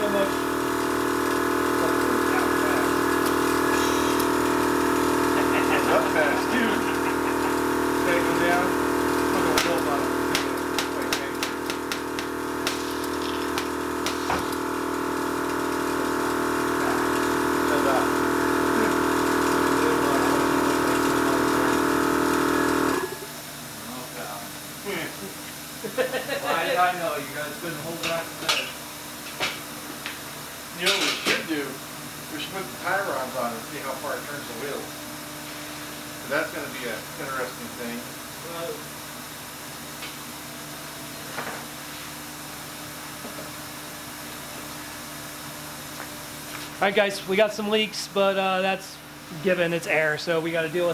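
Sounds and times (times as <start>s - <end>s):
air compressor droning whine: 0.0s - 50.9s
compressed air hissing: 3.3s - 15.4s.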